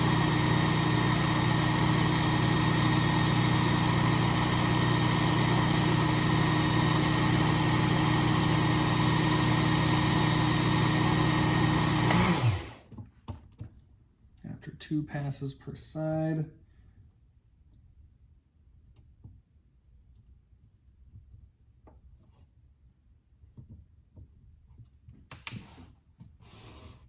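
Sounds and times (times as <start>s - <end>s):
belt sharpener motor running: 0.0s - 12.9s.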